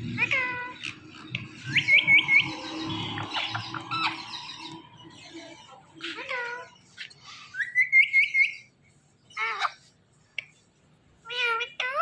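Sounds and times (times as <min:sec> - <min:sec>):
parakeets calling: 0:00.0 - 0:08.7.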